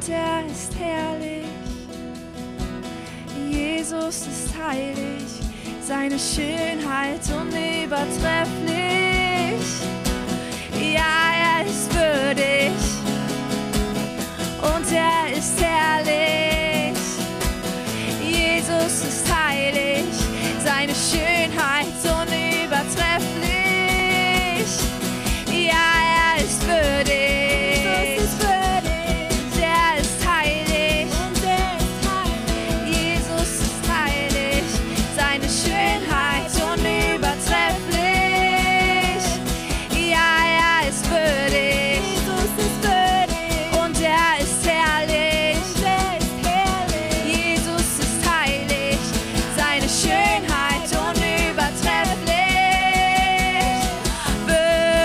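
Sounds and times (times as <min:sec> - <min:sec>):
person singing: 0:00.0 - 0:01.8, 0:03.0 - 0:13.2, 0:14.4 - 0:55.0
steady drum beat: 0:11.9 - 0:55.0
sliding lead melody: 0:25.0 - 0:29.9
band playing instrumental: 0:26.3 - 0:29.9.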